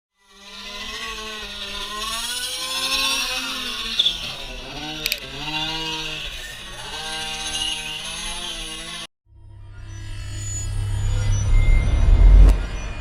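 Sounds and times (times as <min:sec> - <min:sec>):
toy car motors revving: 0:00.2 - 0:09.1.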